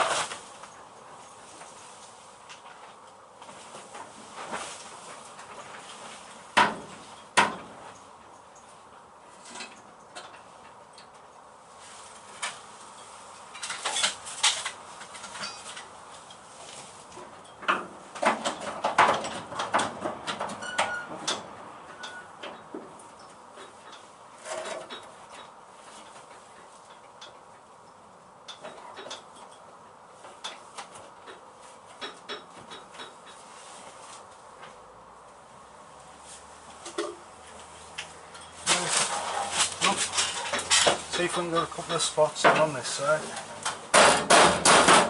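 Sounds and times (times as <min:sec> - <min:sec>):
metal tools clanking: 0:12.9 - 0:16.4, 0:20.6 - 0:26.2, 0:38.2 - 0:44.2.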